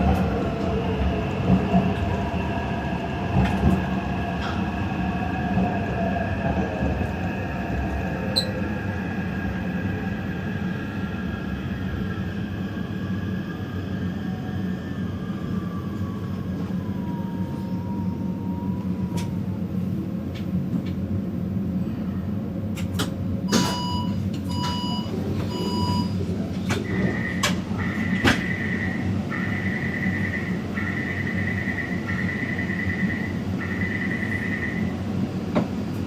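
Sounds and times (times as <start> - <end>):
train rumble and motor whine: 0.0 - 36.0
short beeps: 23.5 - 26.2.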